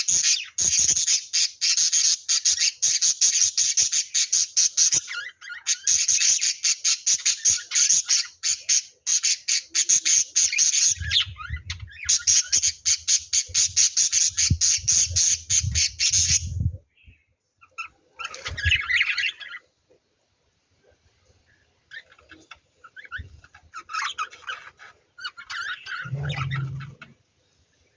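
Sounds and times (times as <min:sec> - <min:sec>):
bird chatter: 0:00.0 - 0:16.6, 0:17.6 - 0:19.7, 0:21.9 - 0:27.2
lovebirds chirping: 0:00.0 - 0:19.8, 0:21.1 - 0:27.6
low rumble: 0:26.0 - 0:27.1.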